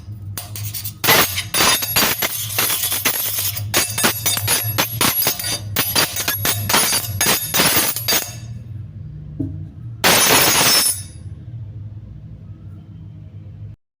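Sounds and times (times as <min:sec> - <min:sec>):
harsh scraping clatter: 0:00.0 - 0:08.6
metal spoon clinking: 0:00.0 - 0:08.6, 0:10.0 - 0:11.2.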